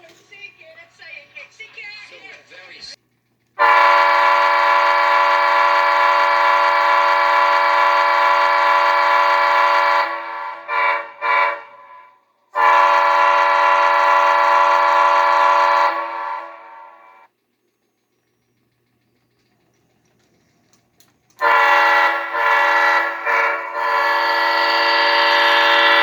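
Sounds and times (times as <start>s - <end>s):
locomotive air horn blasts: 3.6s - 17.3s, 21.4s - 26.0s.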